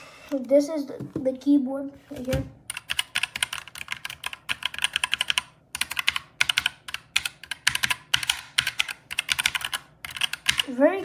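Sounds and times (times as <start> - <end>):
clicky mechanical keyboard typing: 2.7 - 10.8.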